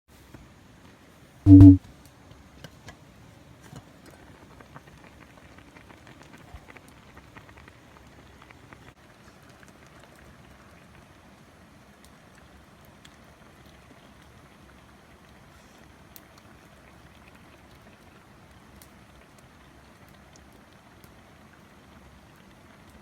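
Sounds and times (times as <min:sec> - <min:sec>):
loud low hum: 0:01.5 - 0:01.8.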